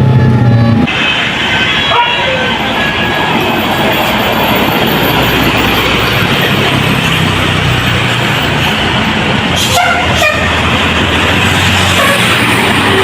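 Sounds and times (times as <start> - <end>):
vehicle engine and tyre noise: 0.0 - 13.0.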